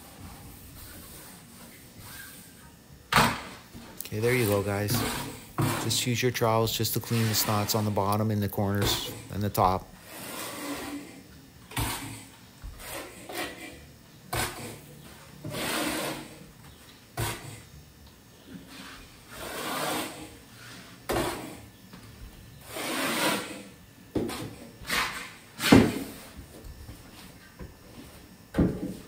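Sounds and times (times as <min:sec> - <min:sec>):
trowel scraping membrane: 0:04.2 - 0:12.2, 0:12.8 - 0:14.8, 0:15.5 - 0:16.4, 0:18.7 - 0:21.6, 0:22.6 - 0:23.7.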